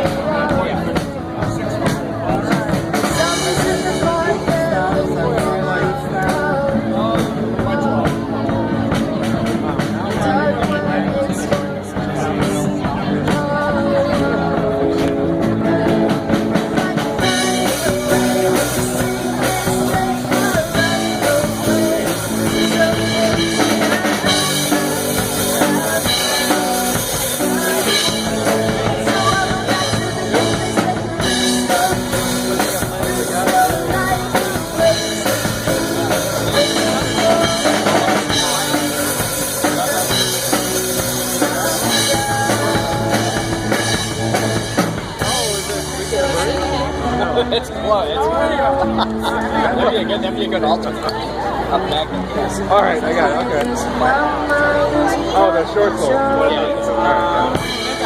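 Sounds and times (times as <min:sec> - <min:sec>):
person singing: 0:00.0 - 0:50.0, 0:52.2 - 0:58.0
rock band playing: 0:00.0 - 0:58.0.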